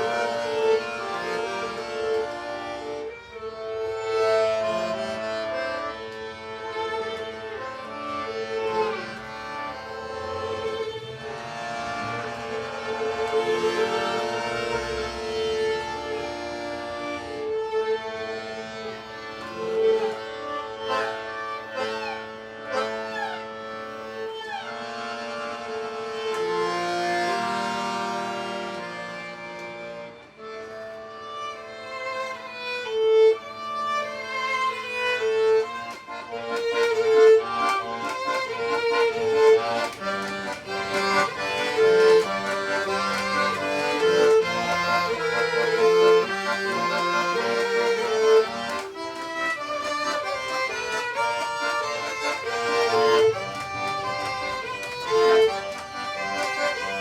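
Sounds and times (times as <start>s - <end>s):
acoustic folk music: 34.0s - 57.0s.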